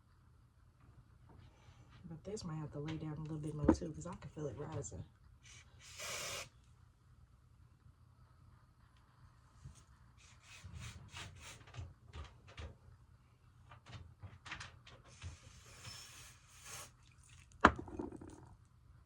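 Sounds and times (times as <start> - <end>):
short spray hiss: 5.8 - 6.5.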